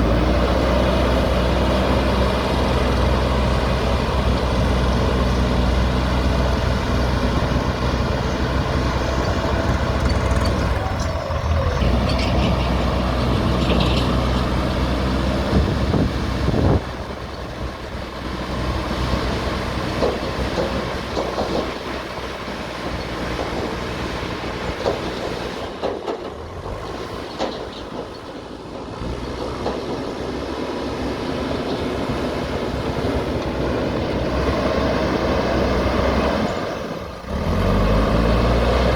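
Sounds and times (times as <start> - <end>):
diesel engine running under load: 0.0 - 38.9
machine clanks and knocks: 11.8 - 14.9, 19.9 - 22.2, 22.8 - 24.0, 24.6 - 26.5, 27.2 - 30.5.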